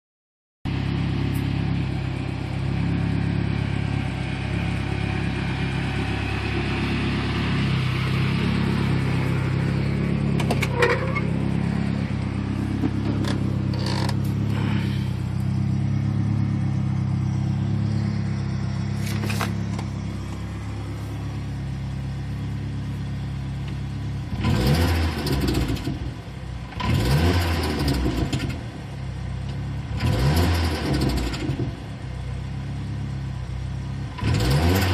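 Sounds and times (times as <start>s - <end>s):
pickup engine idling: 0.7s - 24.3s
engine revving: 1.3s - 28.8s, 29.8s - 31.8s, 34.0s - 34.9s.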